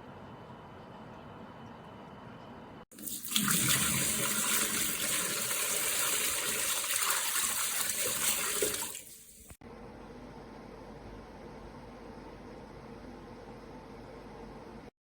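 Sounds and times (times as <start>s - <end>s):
water running and splashing: 2.9s - 9.6s.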